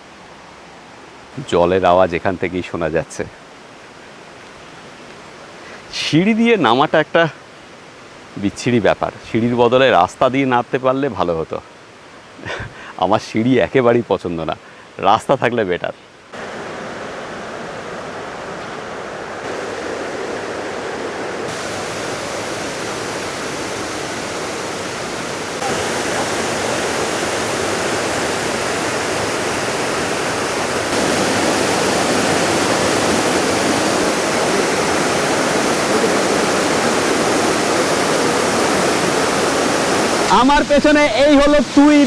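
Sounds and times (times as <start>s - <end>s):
waterfall rushing: 16.3s - 42.0s.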